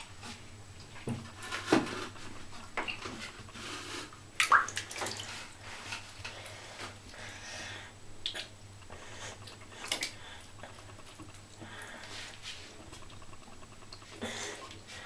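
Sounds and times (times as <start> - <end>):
water splashing in a bathtub: 2.8 - 7.2, 8.2 - 15.0.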